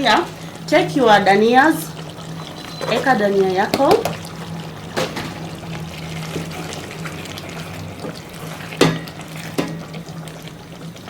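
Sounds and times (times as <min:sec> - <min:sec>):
curry bubbling in pot: 0:00.0 - 0:11.0
utensil knocking on pot: 0:03.7 - 0:04.3.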